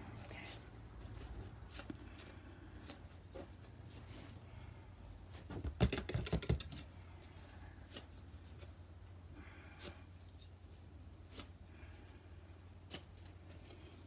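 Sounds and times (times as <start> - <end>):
painting tools tapping: 5.8 - 6.8.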